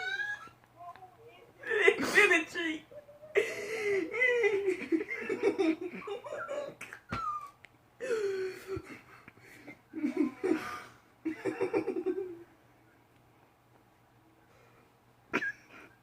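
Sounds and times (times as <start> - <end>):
person laughing wheezily: 3.3 - 9.2.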